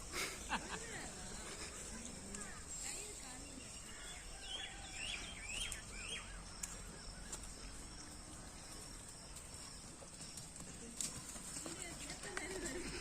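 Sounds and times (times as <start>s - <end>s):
steady high-pitched hiss: 0.0s - 10.4s
birds chirping: 0.0s - 11.0s.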